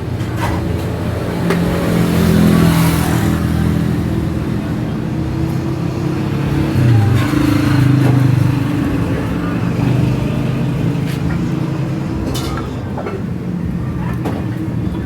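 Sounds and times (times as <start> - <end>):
small motorcycle engine revving: 1.5 - 11.0.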